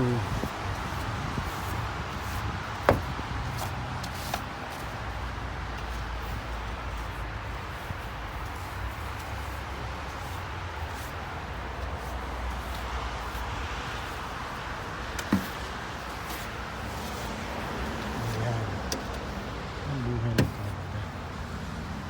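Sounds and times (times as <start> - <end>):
ice being scraped off a car: 15.2 - 18.5.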